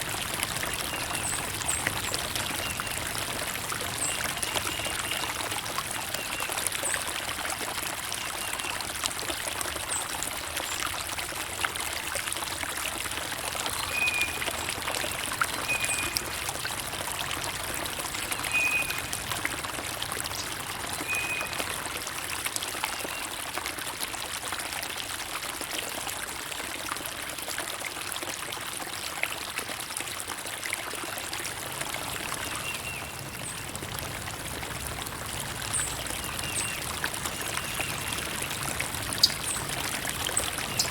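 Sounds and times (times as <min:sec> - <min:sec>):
stream trickling and splashing: 0:00.0 - 0:40.9.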